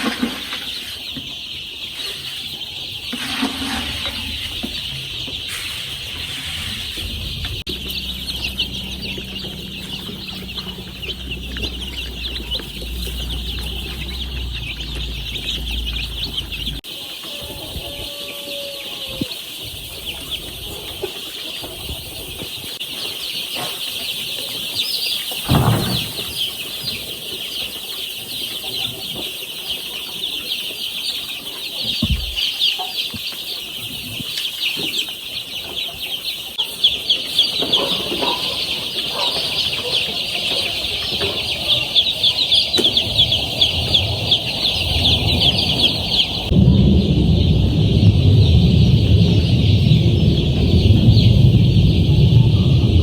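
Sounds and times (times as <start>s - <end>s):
chicks peeping: 0.0s - 53.0s
low hum: 6.4s - 16.8s.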